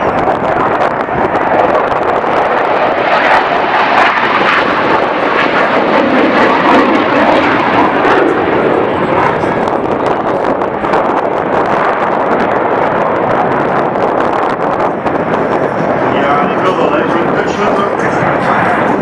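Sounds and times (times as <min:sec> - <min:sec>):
jet engine roaring: 0:00.0 - 0:19.0.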